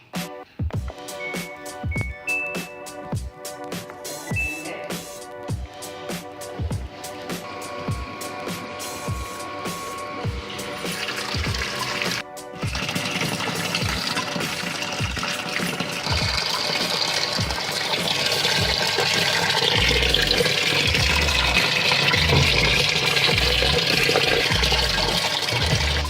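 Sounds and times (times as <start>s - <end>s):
water gushing into washing machine: 6.8s - 26.0s.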